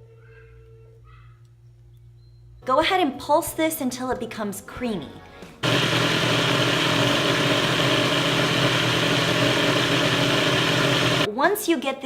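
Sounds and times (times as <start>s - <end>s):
blender motor running: 5.6s - 11.3s.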